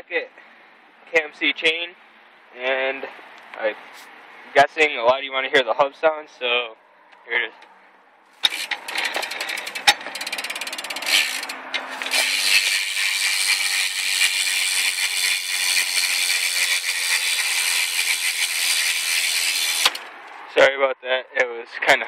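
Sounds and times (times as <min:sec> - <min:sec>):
bicycle hub freewheel clicking: 0:08.4 - 0:20.1.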